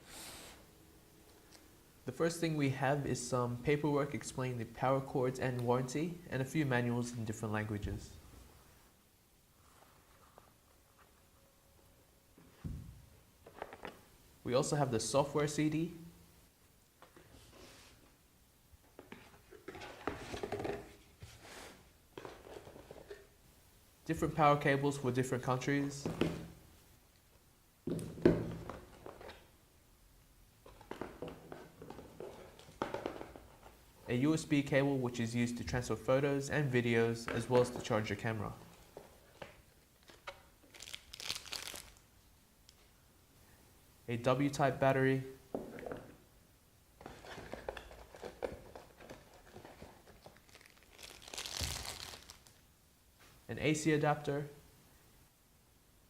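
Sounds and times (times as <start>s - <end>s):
packaging clicks and rustles: 47.0s - 52.5s.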